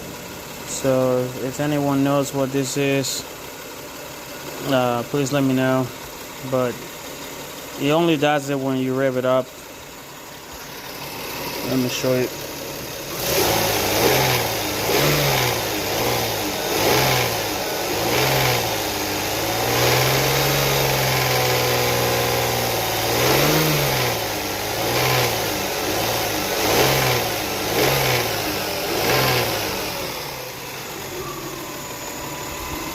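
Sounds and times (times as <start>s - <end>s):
engine rattle: 0.0s - 32.9s
car engine revving: 10.4s - 32.9s.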